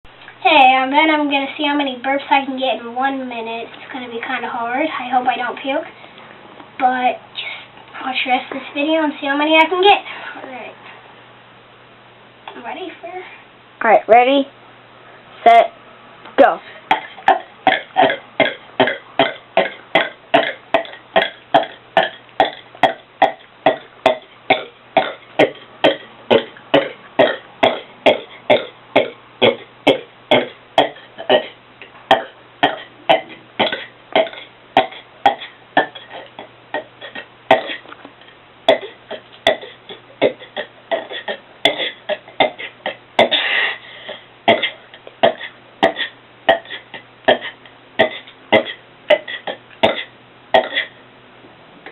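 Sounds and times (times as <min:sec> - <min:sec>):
man burping: 0:16.9 - 0:51.0.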